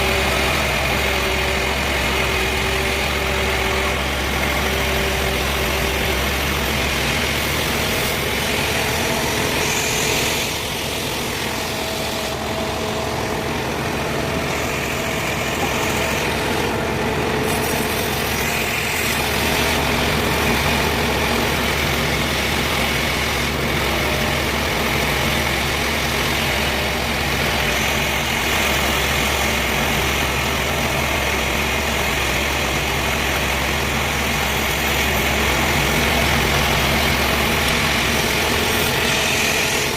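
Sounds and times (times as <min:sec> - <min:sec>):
engine running steadily: 0:00.0 - 0:39.9.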